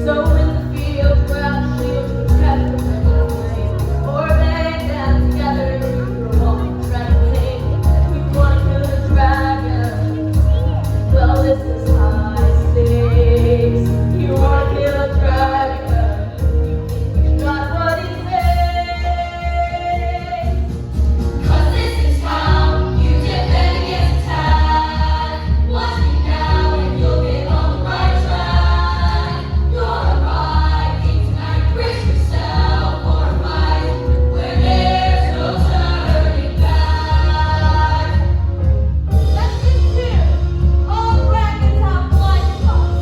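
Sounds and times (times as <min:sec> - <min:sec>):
instrumental accompaniment with heavy bass: 0:00.0 - 0:43.0
group singing a show tune: 0:21.4 - 0:38.5.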